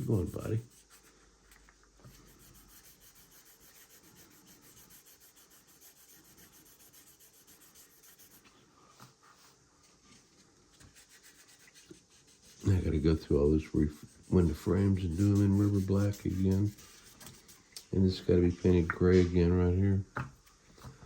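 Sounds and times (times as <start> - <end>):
sanding sponge rubbing: 0.0 - 1.2, 2.1 - 8.5, 10.9 - 17.6.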